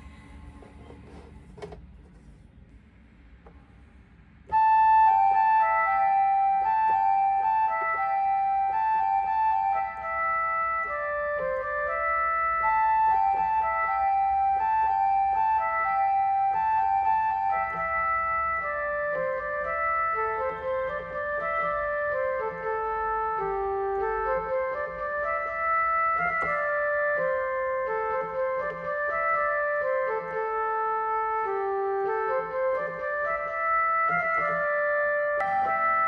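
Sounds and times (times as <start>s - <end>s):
organ-like keyboard melody: 4.5s - 36.0s.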